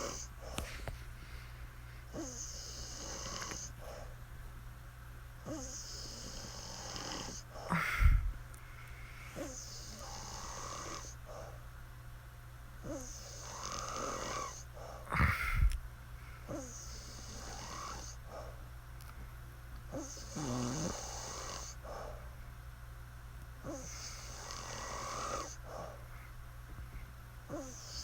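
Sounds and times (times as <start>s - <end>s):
low rattling snore: 0.0s - 0.3s, 2.2s - 3.7s, 5.5s - 7.9s, 9.4s - 11.2s, 12.8s - 15.6s, 16.5s - 18.2s, 20.0s - 21.8s, 23.6s - 25.9s, 27.5s - 28.0s
woman breathing in sleep: 5.5s - 11.5s.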